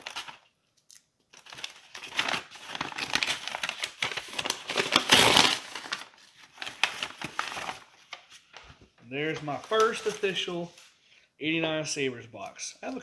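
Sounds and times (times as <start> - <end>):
paper crinkling and tearing: 0.0 - 0.5, 1.3 - 10.9.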